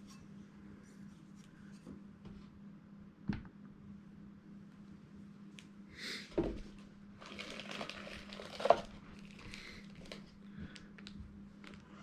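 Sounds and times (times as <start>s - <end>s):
plastic packaging crinkling: 7.2s - 12.0s.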